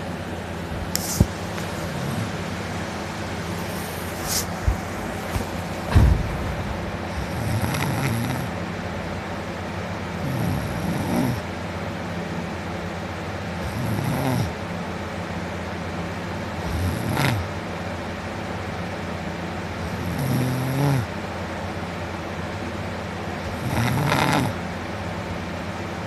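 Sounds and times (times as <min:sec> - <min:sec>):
steady background hum: 0:00.0 - 0:26.0
man snoring: 0:01.7 - 0:02.4, 0:07.1 - 0:08.5, 0:10.2 - 0:11.4, 0:13.6 - 0:14.6, 0:16.6 - 0:17.5, 0:19.8 - 0:21.1, 0:23.5 - 0:24.6
sharp thump: 0:03.6 - 0:08.3.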